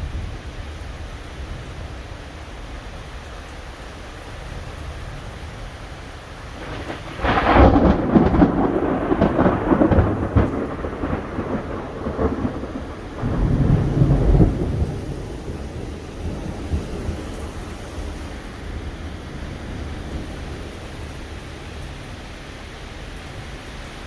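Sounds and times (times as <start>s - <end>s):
rain hiss: 0.0s - 24.0s
thunder clap and rumble: 4.7s - 22.2s.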